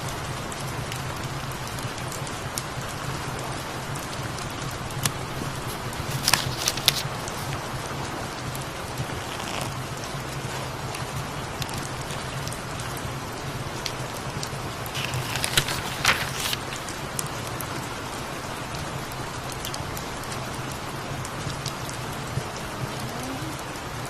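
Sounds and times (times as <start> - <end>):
steady rain falling: 0.0 - 24.0
crackles: 4.8 - 7.7, 9.0 - 10.1, 13.8 - 17.3
low steady hum: 14.8 - 17.2.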